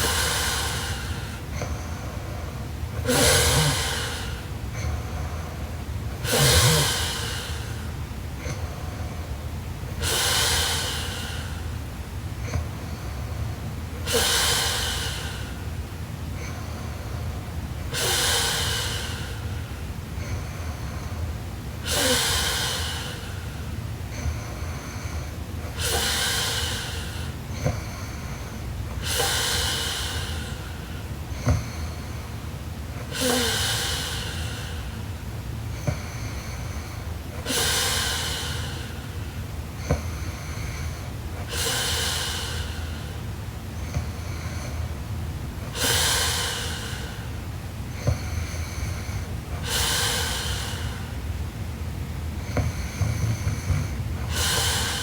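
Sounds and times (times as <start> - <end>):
steady low hum: 0.0 - 55.0
woman snoring: 3.0 - 5.0, 6.2 - 7.8, 21.8 - 23.4, 33.1 - 34.9.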